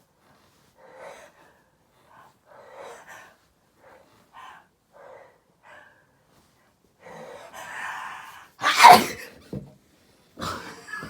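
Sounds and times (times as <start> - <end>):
person gasping before sneeze: 8.6 - 9.3.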